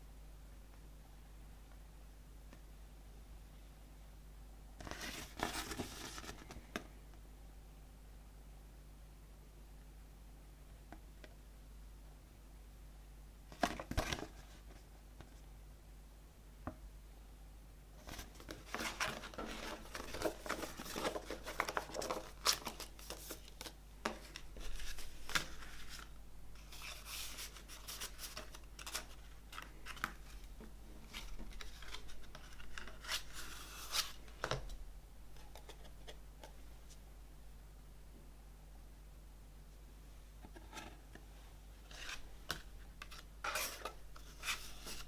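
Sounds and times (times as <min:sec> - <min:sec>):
paper and plastic crinkling: 0:18.0 - 0:34.5.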